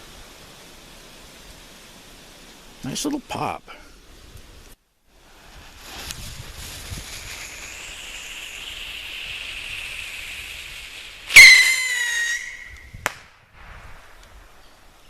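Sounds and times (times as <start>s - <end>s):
steady hiss: 0.0s - 15.0s
bottle rocket whistle: 7.2s - 13.1s
rocket sharp pop: 12.7s - 13.3s.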